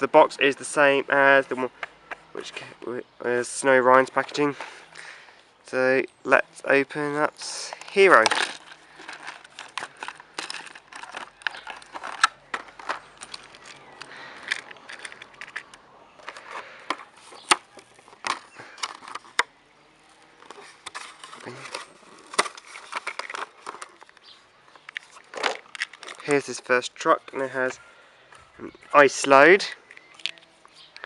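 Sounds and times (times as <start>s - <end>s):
packaging rustling: 7.4s - 19.5s, 20.2s - 26.5s
scraping: 7.4s - 19.5s.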